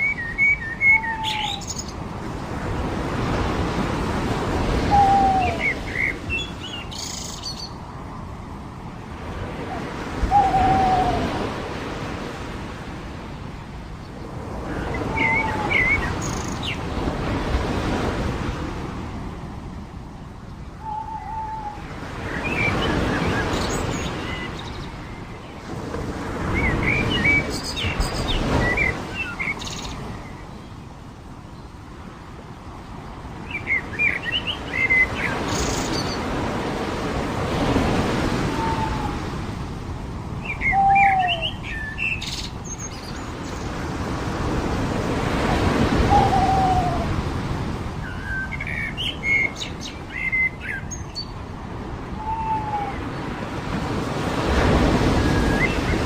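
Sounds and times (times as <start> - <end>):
small birds chirping: 0.0 - 2.0, 40.4 - 43.8
waves washing onto beach: 0.0 - 56.0
low down-slurred bird call: 40.6 - 41.7, 52.2 - 53.0.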